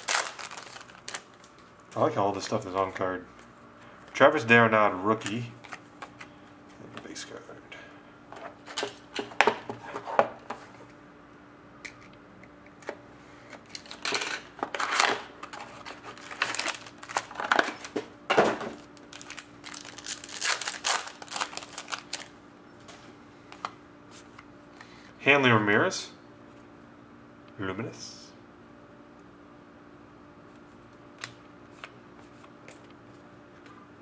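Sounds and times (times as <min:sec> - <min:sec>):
wrapper crinkling and tearing: 0:00.0 - 0:01.8, 0:13.7 - 0:18.0, 0:18.7 - 0:22.4.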